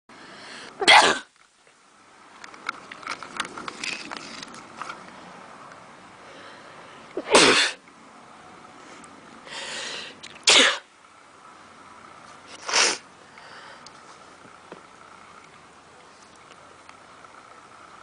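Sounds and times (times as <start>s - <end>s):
person sneezing: 0.8s - 1.3s, 7.2s - 7.8s, 10.4s - 10.9s.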